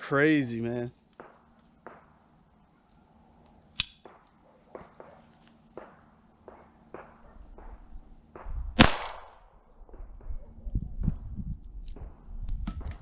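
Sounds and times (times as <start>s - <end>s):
pistol shot: 8.3s - 9.4s.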